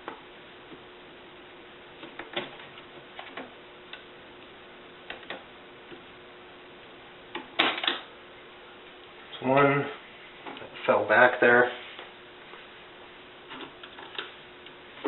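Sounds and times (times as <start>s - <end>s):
faint steady hum: 0.0s - 15.0s.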